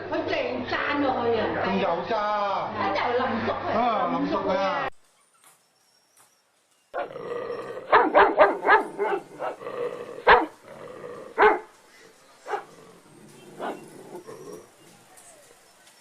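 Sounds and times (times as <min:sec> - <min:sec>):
dog barking: 0:07.8 - 0:09.6, 0:10.2 - 0:10.6, 0:11.4 - 0:11.7, 0:12.4 - 0:14.3.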